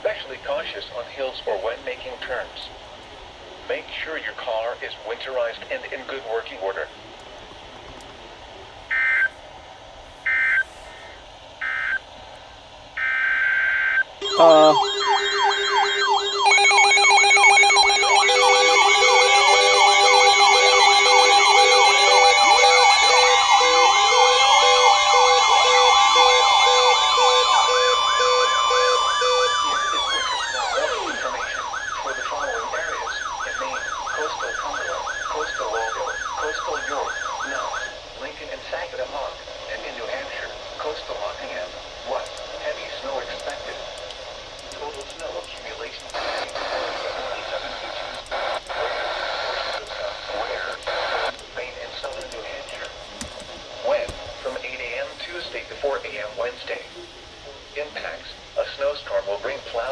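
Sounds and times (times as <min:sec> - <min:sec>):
electronic sirens and alarm tones: 0:13.0 - 0:38.0
short electronic beeps: 0:14.2 - 0:29.7
repeating electronic warble: 0:14.2 - 0:33.0.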